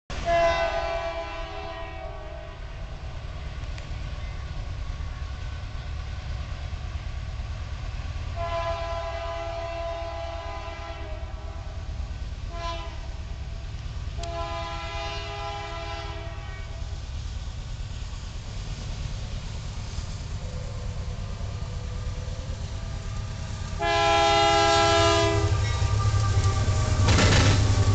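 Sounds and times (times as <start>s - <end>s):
locomotive air horn blasts: 0.1s - 2.7s, 8.4s - 11.8s, 12.5s - 13.3s, 14.2s - 16.8s, 23.8s - 27.9s
train rumbling: 0.1s - 27.9s.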